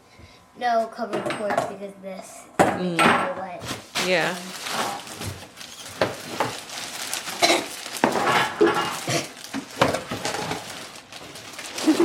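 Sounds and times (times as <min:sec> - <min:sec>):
cardboard box being unpacked: 0:03.6 - 0:12.0.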